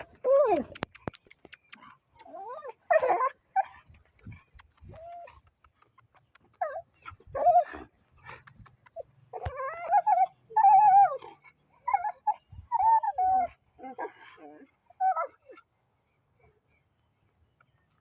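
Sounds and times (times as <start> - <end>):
dog whining: 6.6 - 8.4, 9.3 - 15.6.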